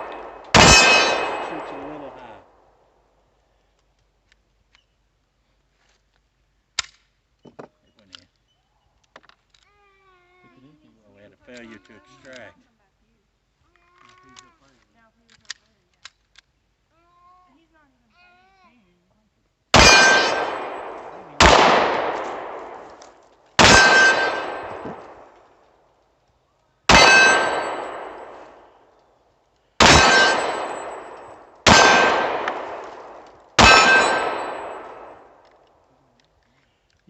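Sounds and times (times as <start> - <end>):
steel target ringing: 0.0 - 2.2, 19.8 - 22.6, 23.6 - 25.2, 26.9 - 28.6, 29.8 - 35.3
handgun shots: 0.0 - 2.3, 19.8 - 25.4, 26.9 - 28.7, 29.8 - 35.6.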